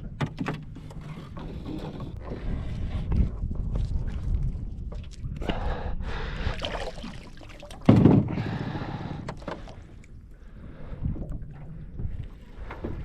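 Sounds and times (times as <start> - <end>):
wind buffeting microphone: 1.4 - 6.7.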